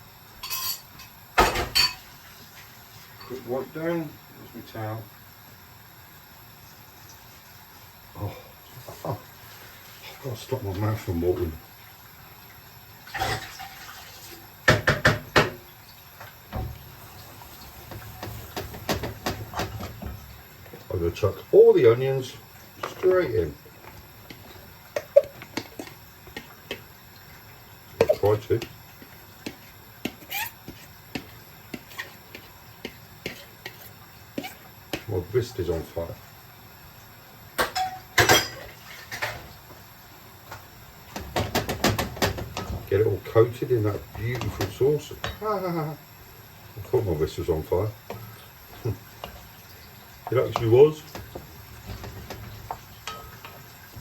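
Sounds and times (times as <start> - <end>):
cookware knocks: 14.7 - 15.6
utensil scraping frying pan: 21.8 - 35.1.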